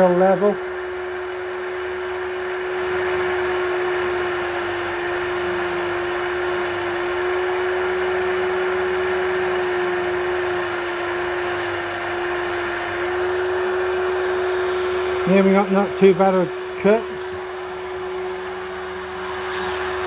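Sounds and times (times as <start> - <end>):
drill bit sharpener motor running: 0.0 - 15.4, 16.6 - 20.0
high grinding hiss: 2.6 - 7.1, 9.2 - 13.1.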